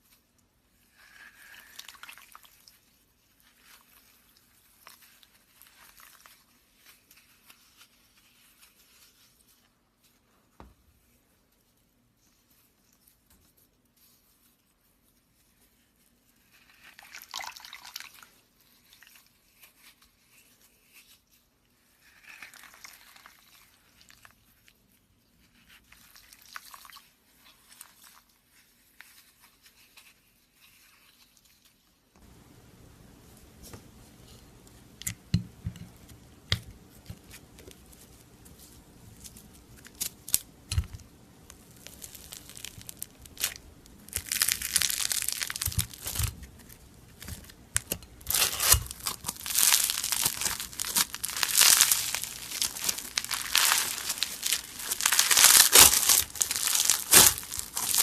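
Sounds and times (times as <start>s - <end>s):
slime squelching: 0.8s - 9.5s, 35.9s - 58.0s
sticky pops and crackles: 39.9s - 46.4s, 47.2s - 58.0s.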